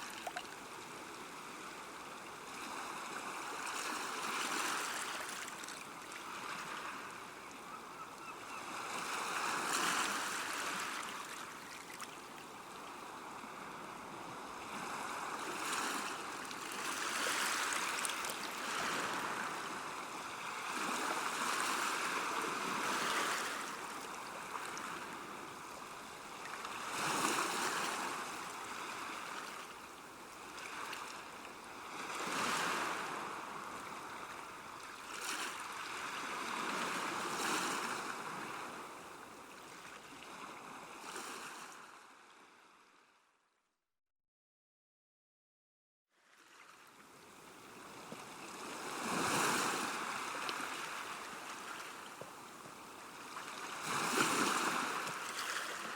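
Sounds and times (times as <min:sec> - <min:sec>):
small waves washing on shore: 0:00.0 - 0:42.7, 0:46.3 - 0:55.9.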